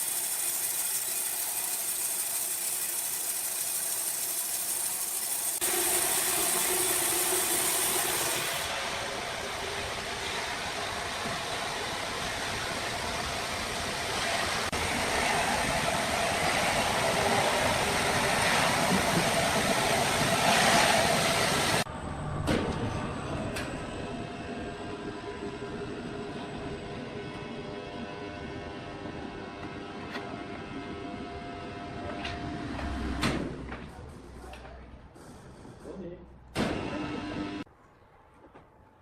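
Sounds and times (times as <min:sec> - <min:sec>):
sawmill machinery running: 0:00.0 - 0:21.9.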